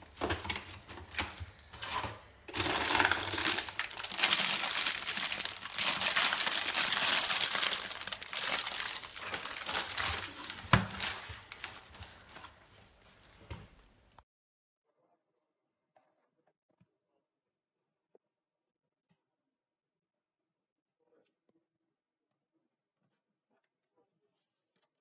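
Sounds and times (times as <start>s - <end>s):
crinkling and rustling handling noise: 0.0s - 14.2s.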